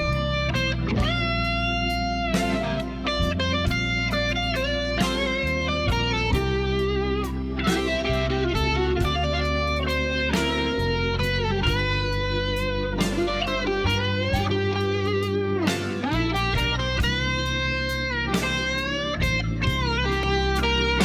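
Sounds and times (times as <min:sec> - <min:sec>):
blues electric guitar: 0:00.0 - 0:21.0
steady drum beat: 0:02.4 - 0:06.6, 0:15.7 - 0:17.6.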